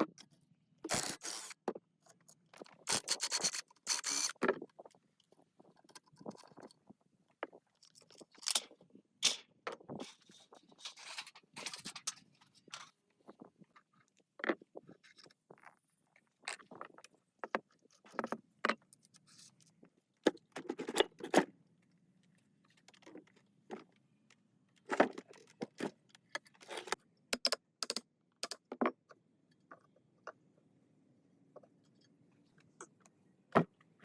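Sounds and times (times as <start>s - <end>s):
metal tools clinking and clattering: 9.2s - 12.9s.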